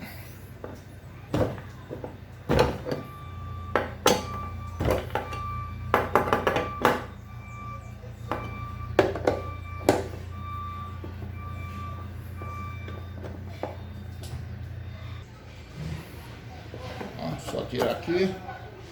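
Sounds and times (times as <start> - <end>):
tools knocking on metal: 3.7 - 7.1.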